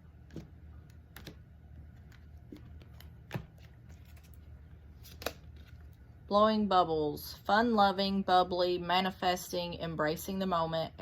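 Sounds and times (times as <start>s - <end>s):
cards being shuffled: 0.2s - 6.0s.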